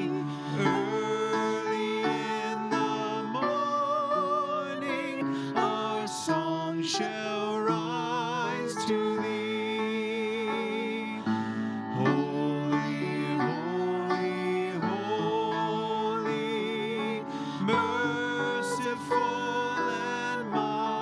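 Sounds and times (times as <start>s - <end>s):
instrumental hymn: 0.0s - 21.0s.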